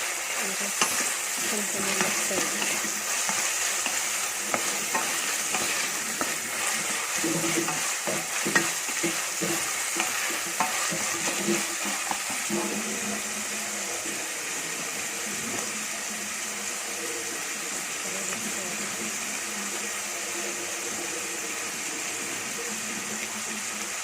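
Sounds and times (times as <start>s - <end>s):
utensil scraping a pan: 0.0s - 13.3s
vegetables sizzling in a pan: 0.0s - 24.0s.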